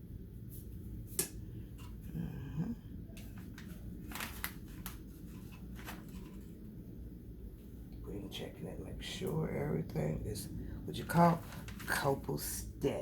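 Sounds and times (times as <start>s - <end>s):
low hum of a voice: 1.7s - 3.6s, 7.9s - 13.0s.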